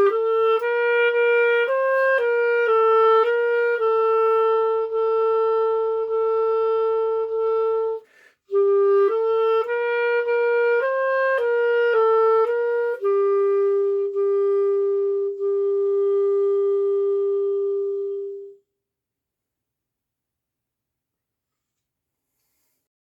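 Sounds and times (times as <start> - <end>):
solo clarinet melody: 0.0 - 18.7
short breath: 8.0 - 8.5, 22.3 - 22.9.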